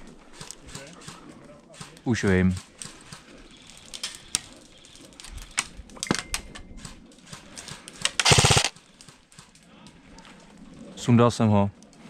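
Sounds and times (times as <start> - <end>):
airsoft gun full-auto burst: 8.2 - 8.7.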